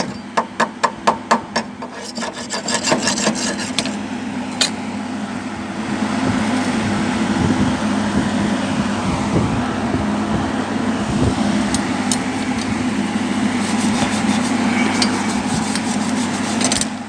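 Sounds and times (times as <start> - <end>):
steady low hum: 1.7 - 17.0
scraping slag off steel plate: 1.8 - 4.0.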